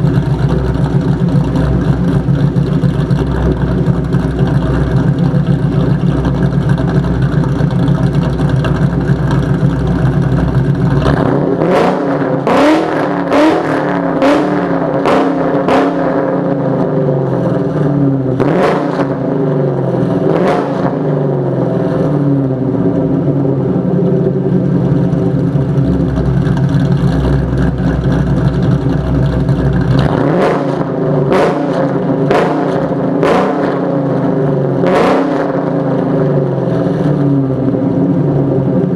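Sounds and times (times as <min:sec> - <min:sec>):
car engine idling and revving: 0:00.0 - 0:38.9.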